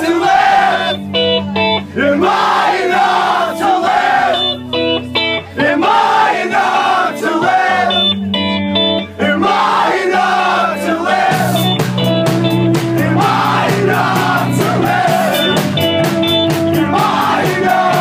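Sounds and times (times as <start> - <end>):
shouted group vocals: 0.0 - 1.0, 2.0 - 4.5, 5.6 - 8.0, 9.2 - 11.6, 13.0 - 15.6, 16.8 - 18.0
picked guitar figure: 0.1 - 18.0
rock band playing live: 0.1 - 18.0.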